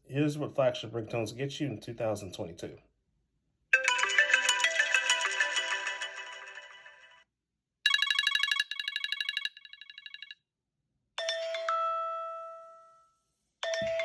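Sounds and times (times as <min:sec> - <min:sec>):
rapid electronic ringtone trill: 0:03.8 - 0:07.2, 0:07.9 - 0:10.4.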